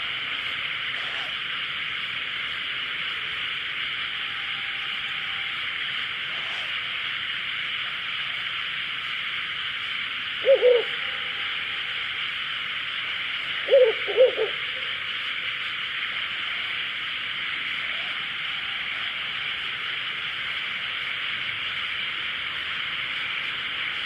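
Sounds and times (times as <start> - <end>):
steady hiss: 0.0 - 24.0
owl hooting: 0.9 - 1.4, 6.3 - 6.8, 10.4 - 11.5, 13.5 - 15.0, 17.8 - 19.4.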